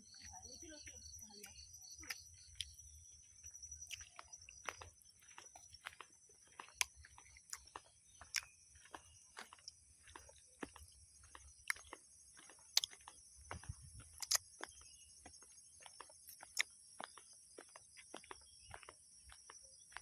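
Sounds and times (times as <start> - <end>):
clicks and crunches: 12.7 - 14.5, 16.3 - 17.2.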